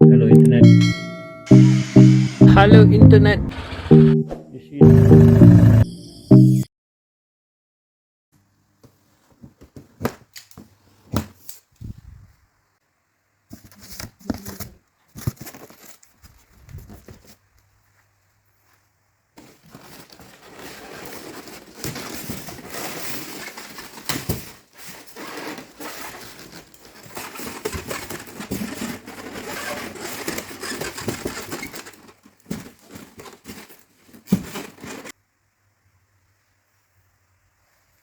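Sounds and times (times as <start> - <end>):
plastic and cardboard crinkling: 13.5 - 35.2.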